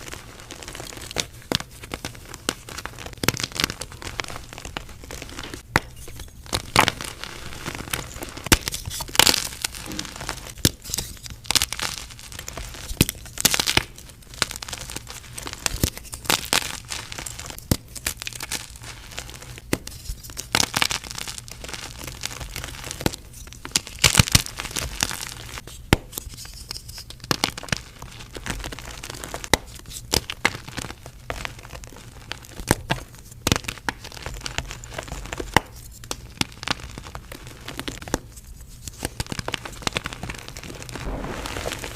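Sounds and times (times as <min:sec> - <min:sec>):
chalk crunching and crackling: 0:00.0 - 0:30.2.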